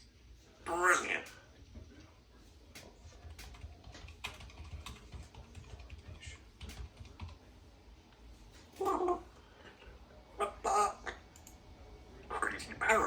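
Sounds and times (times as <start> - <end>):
typing on computer keyboard: 2.8 - 7.4.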